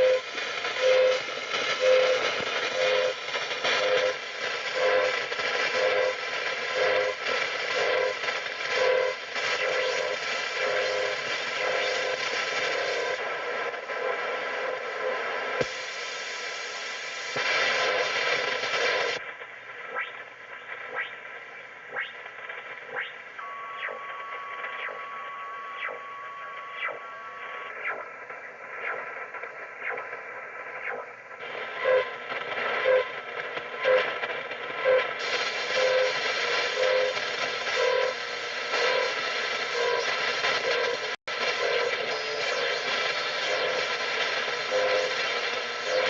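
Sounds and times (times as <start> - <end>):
sweeping radio chirps: 0.0 - 13.2, 14.0 - 34.1, 34.8 - 46.0
radio receiver hiss: 0.0 - 46.0
steady radio tone: 0.0 - 46.0
short radio beeps: 23.4 - 28.0.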